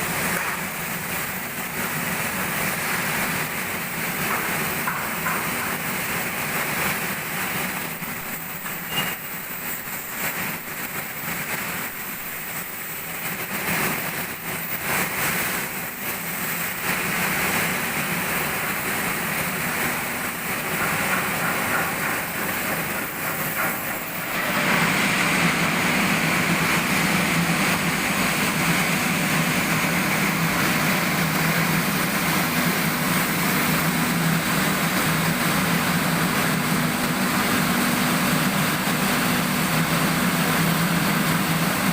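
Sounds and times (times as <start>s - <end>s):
heavy machinery humming: 13.3s - 41.9s.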